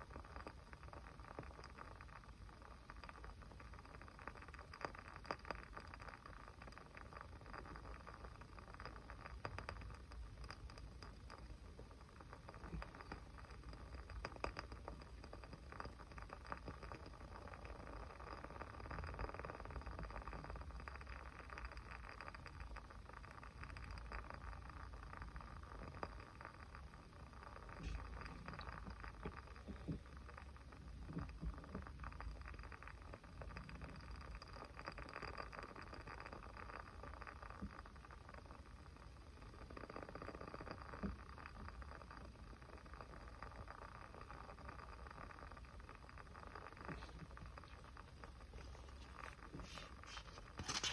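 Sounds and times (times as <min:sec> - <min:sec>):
small fire crackling: 0:00.0 - 0:50.9.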